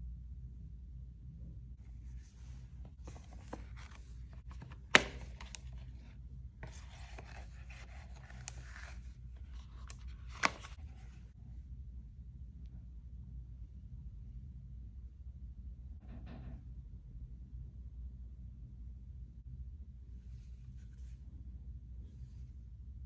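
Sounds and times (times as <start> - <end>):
cardboard packaging rustling: 2.2 - 11.1.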